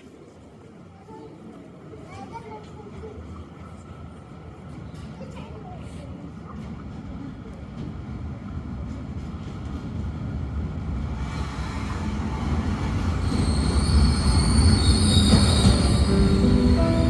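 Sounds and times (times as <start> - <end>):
train rumbling on rails: 1.5 - 17.0
high wheel squeal: 13.2 - 16.7.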